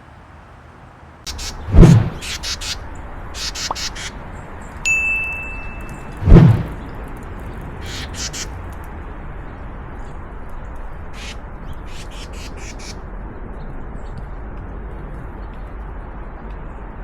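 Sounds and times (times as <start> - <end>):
harsh bird calls: 1.3 - 4.2, 7.8 - 8.6, 11.2 - 13.0
low background rumble: 1.3 - 17.0.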